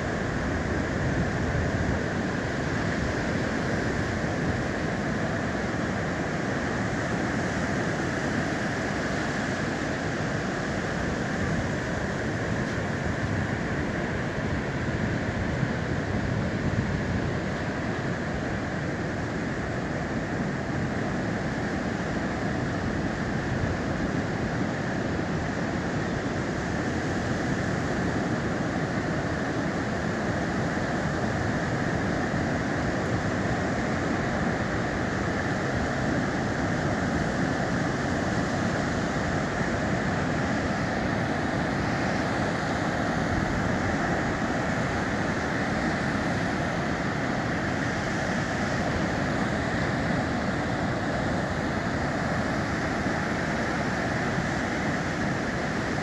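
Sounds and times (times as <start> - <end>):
sea surf breaking: 26.6 - 56.0.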